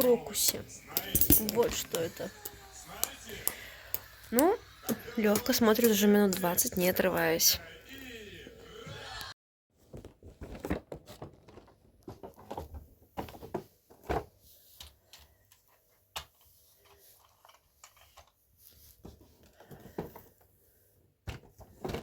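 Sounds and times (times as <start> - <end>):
small objects clicking and knocking: 0.5 - 6.7.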